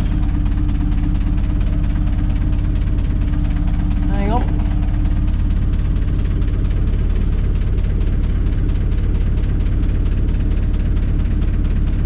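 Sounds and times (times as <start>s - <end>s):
tractor diesel engine idling: 0.0s - 12.0s.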